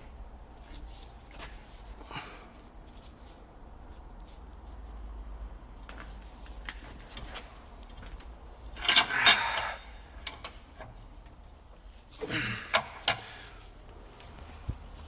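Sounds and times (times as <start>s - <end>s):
metal clatter: 8.7s - 10.5s
metal tools clinking and scraping: 8.7s - 10.5s.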